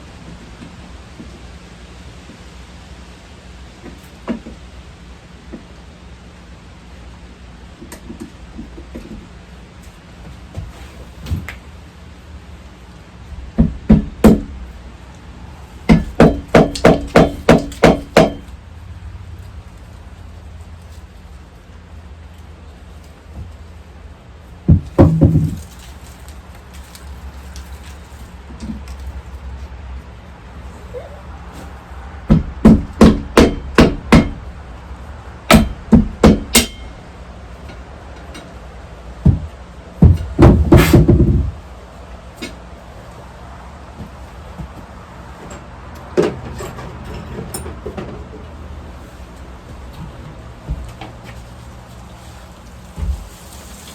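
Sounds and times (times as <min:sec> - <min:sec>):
hammer blows: 0:35.5 - 0:37.1.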